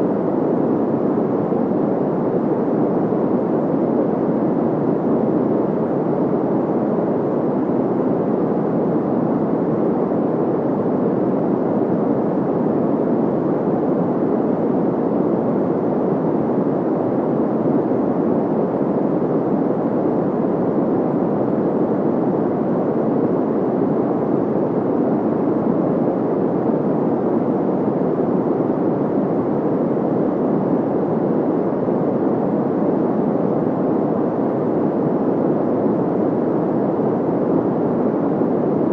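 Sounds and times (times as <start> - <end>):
white noise: 0.0 - 38.9.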